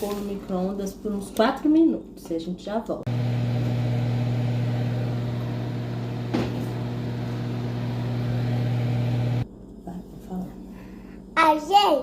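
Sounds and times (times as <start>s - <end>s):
microwave oven humming: 3.1s - 9.8s.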